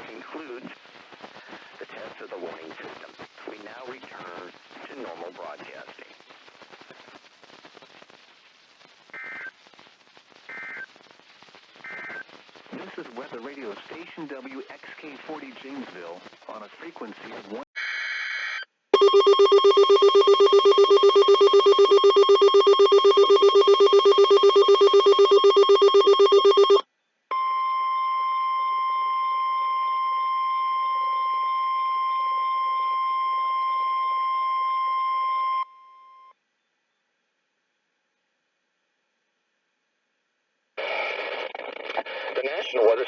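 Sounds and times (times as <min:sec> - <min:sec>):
steady warning alarm tone: 0:19.0 - 0:26.8.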